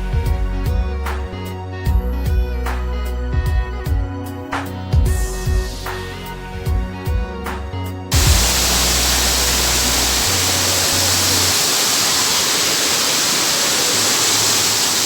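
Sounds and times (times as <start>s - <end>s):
background music: 0.0s - 11.8s
loud steady rushing noise: 8.1s - 15.0s.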